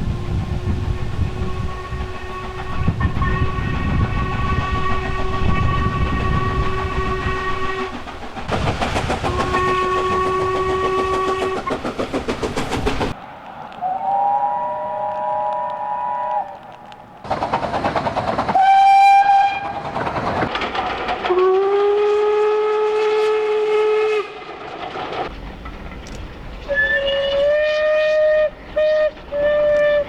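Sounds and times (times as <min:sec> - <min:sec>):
locomotive exhaust chuffing: 0:00.0 - 0:13.2
steam locomotive whistle blast: 0:00.1 - 0:08.0, 0:09.2 - 0:11.7, 0:13.8 - 0:16.6, 0:18.5 - 0:19.8, 0:21.3 - 0:24.4, 0:26.6 - 0:30.0
locomotive chime whistle: 0:18.6 - 0:19.7, 0:26.6 - 0:30.0.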